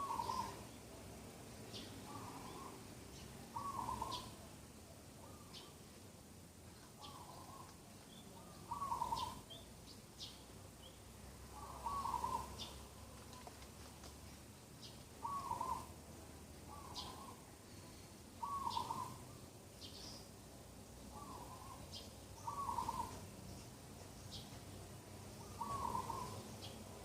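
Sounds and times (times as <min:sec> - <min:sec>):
bird low-pitched call: 0:00.0 - 0:00.6, 0:02.0 - 0:02.8, 0:03.5 - 0:04.4, 0:08.4 - 0:09.4, 0:11.6 - 0:12.7, 0:15.2 - 0:15.9, 0:18.4 - 0:19.2, 0:21.1 - 0:23.2, 0:25.4 - 0:26.4.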